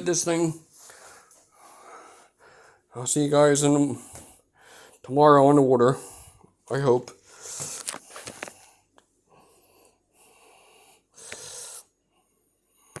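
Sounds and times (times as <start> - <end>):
person breathing close to microphone: 0.7 - 2.9, 4.0 - 5.0, 5.9 - 6.5, 7.2 - 13.0.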